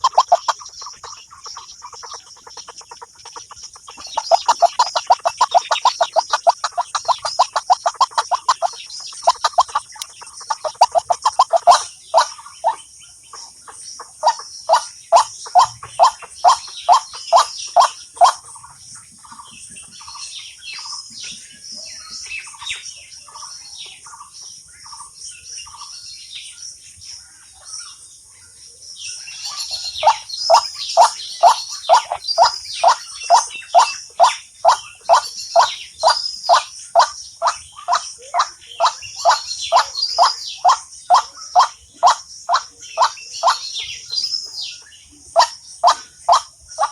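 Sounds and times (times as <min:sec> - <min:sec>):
bird call from phone: 0:00.0 - 0:01.1, 0:02.1 - 0:12.8, 0:29.9 - 0:43.8, 0:45.4 - 0:46.9
high twittering chirps: 0:00.0 - 0:18.7, 0:29.3 - 0:46.9.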